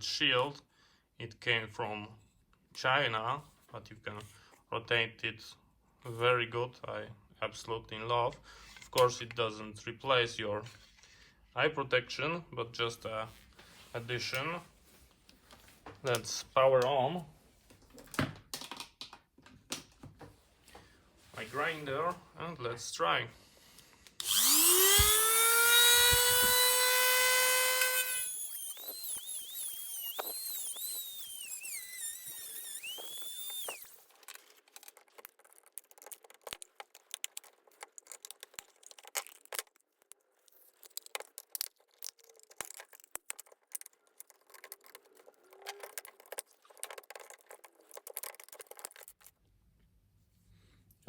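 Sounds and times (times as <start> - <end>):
electric grinder whining: 24.2 - 34.1
handling clicks and knocks: 34.1 - 49.4.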